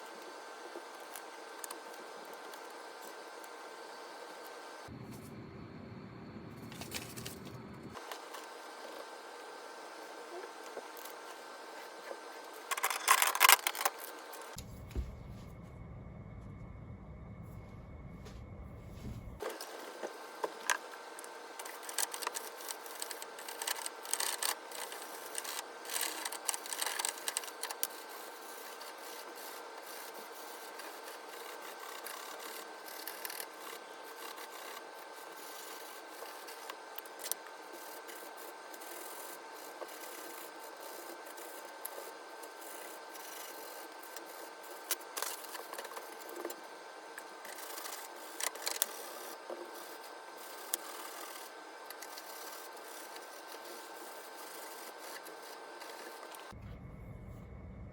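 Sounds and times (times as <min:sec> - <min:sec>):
faint hum: 0:00.0 - 0:57.9.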